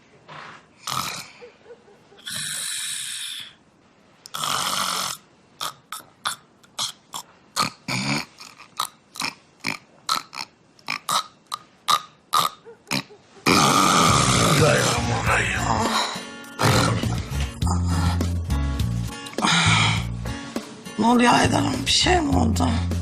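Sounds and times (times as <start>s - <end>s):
woman snoring heavily: 4.4s - 5.2s, 13.5s - 18.4s.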